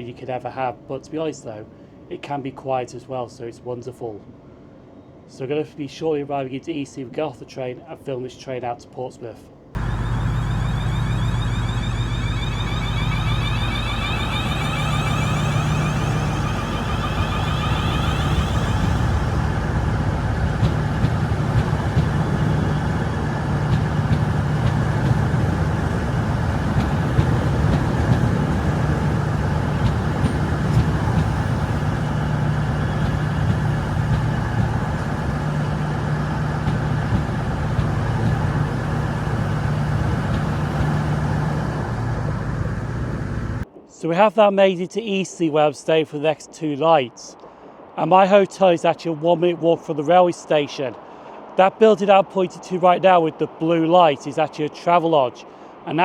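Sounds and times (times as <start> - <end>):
electric train low hum: 9.6 - 43.9
traction motors whining: 9.8 - 43.6.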